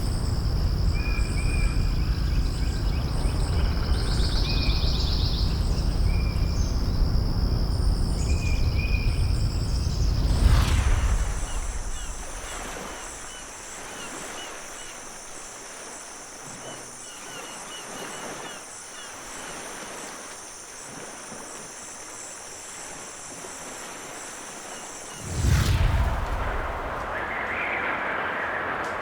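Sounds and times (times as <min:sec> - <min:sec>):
soft rushing noise: 0:00.0 - 0:13.6, 0:25.1 - 0:29.0
high insect drone: 0:00.0 - 0:25.8
bird chirps: 0:00.1 - 0:10.2.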